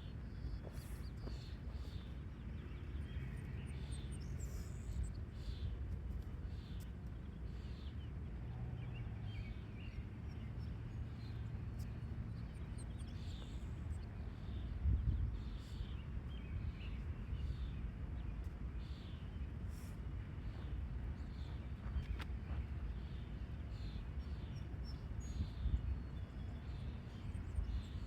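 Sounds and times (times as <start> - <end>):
low outdoor rumble: 0.0 - 28.0
small bird chirping: 9.5 - 17.8.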